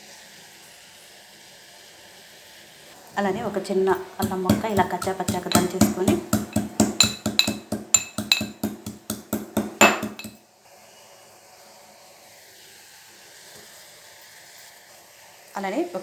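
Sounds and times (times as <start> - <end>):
pestle pounding in a mortar: 3.3 - 10.4.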